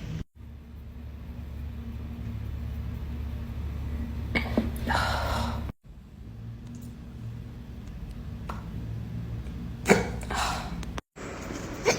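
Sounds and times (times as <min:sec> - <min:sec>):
low steady room hum: 0:00.0 - 0:11.9
loud sharp hiccup: 0:09.8 - 0:10.3.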